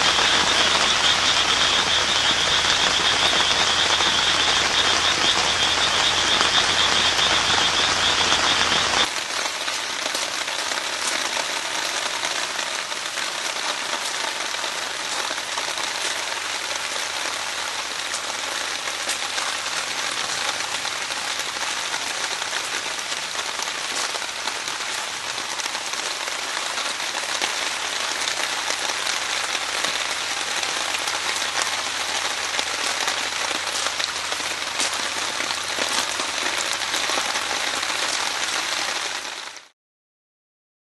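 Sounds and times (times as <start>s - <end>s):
frog trilling: 0.0s - 9.1s
rain pattering: 0.0s - 39.7s.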